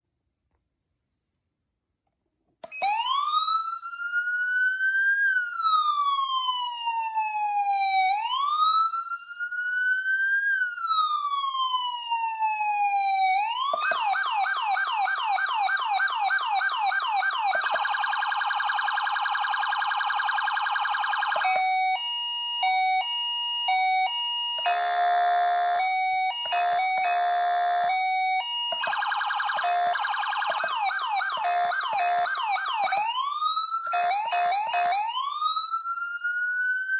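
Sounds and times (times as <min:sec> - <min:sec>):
electronic siren cycling tones: 0:13.3 - 0:36.9.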